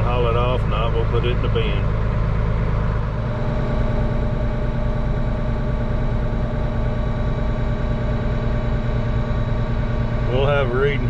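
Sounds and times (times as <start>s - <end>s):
diesel machinery engine hum: 0.0s - 11.0s.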